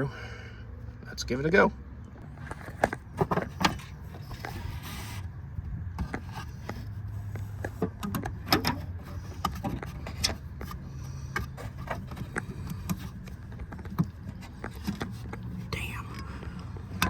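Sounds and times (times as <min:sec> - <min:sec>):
cable clicking and scraping: 0:05.9 - 0:17.0.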